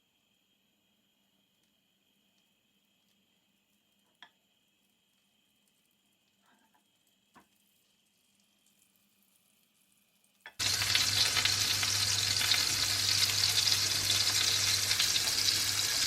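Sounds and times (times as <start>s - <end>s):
bread sizzling in a pan: 2.6s - 16.0s.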